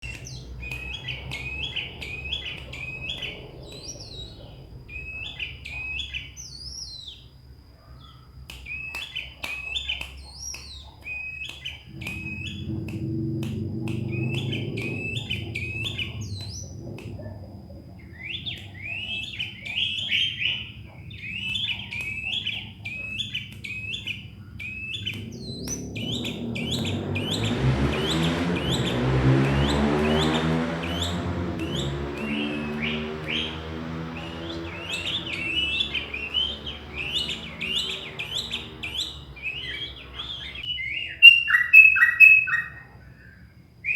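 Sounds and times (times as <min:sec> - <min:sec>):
sharp clicks: 0:00.0 - 0:04.4, 0:08.4 - 0:20.2, 0:21.0 - 0:40.7
bird chirping: 0:00.0 - 0:43.9
rushing noise rising in pitch: 0:11.9 - 0:17.2, 0:25.1 - 0:40.6.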